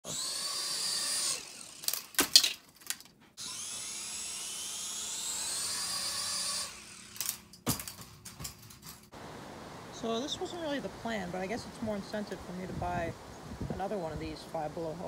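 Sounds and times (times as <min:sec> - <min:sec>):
toy helicopter motor whine: 0:00.0 - 0:02.2, 0:03.4 - 0:07.5.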